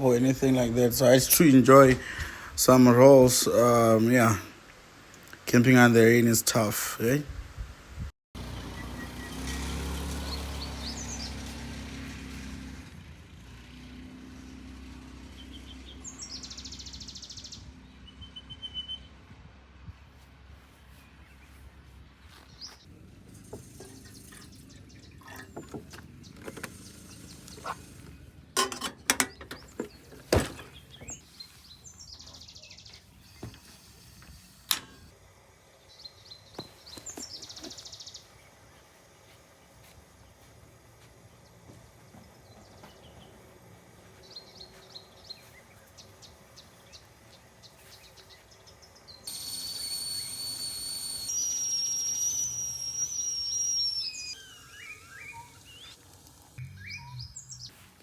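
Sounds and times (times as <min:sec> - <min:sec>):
birds chirping: 0:08.4 - 0:11.7, 0:15.3 - 0:19.2, 0:20.7 - 0:22.9, 0:23.5 - 0:28.4, 0:29.0 - 0:35.1, 0:35.7 - 0:58.0
loud steady high whistle: 0:49.2 - 0:56.1.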